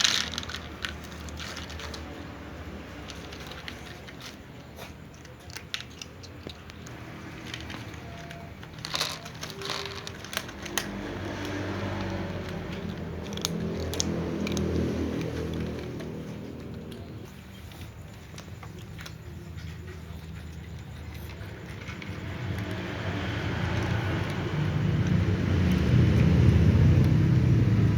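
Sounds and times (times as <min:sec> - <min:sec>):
cats crunching dry food: 0:00.0 - 0:27.9.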